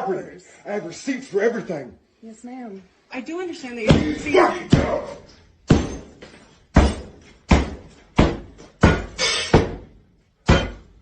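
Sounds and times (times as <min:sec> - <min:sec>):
sledgehammer striking shower: 0:05.7 - 0:11.0.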